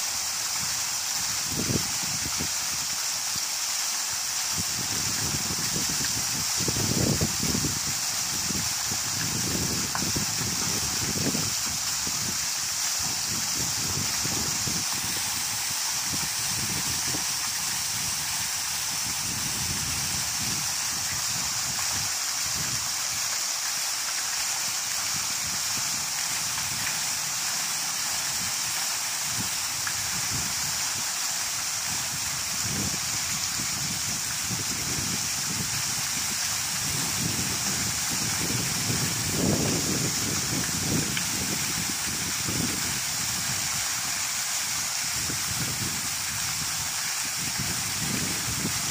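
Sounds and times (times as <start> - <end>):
low rumble of falling water: 0.0 - 48.9
waterfall rushing: 0.0 - 48.9.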